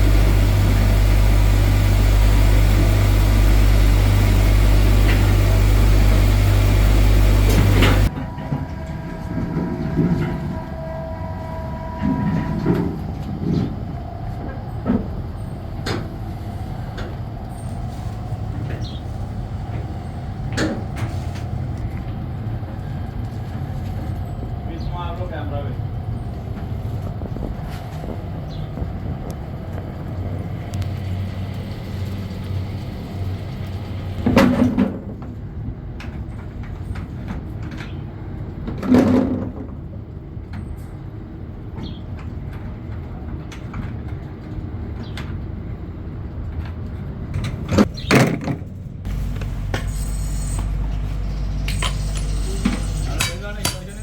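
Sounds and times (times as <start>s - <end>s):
loud scraping clanks: 0.0s - 16.2s, 47.4s - 54.0s
factory machinery humming: 0.0s - 34.9s, 48.9s - 54.0s
deeper machine hum: 0.0s - 35.2s, 47.2s - 54.0s.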